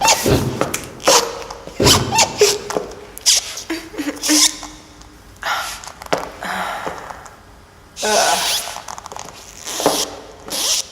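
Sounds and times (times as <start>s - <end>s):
latex squeaking and rubbing: 0.0s - 3.7s, 8.0s - 10.9s.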